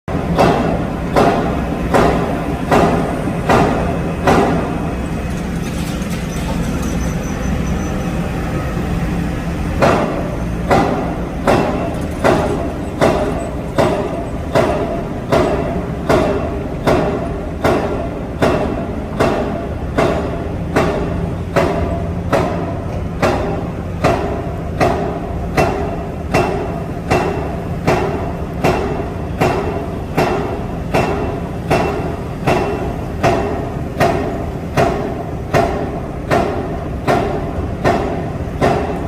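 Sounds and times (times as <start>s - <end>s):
excavator engine running: 0.1s - 39.0s
hydraulic rock breaker striking rock: 9.8s - 39.0s.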